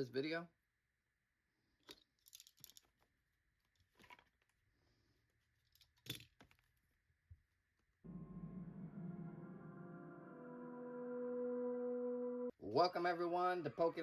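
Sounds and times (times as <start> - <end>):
small objects clicking and rustling: 1.8 - 4.6, 5.6 - 6.8
music of sustained ringing tones: 8.1 - 12.5.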